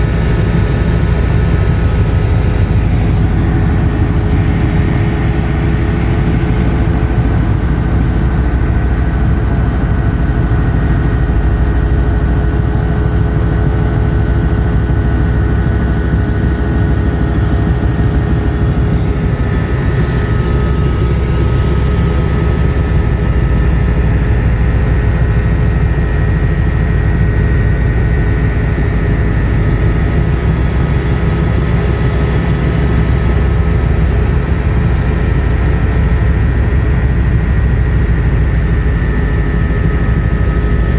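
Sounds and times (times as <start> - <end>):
thin high whine: 0.0 - 26.3
helicopter engine and rotor: 0.0 - 40.9.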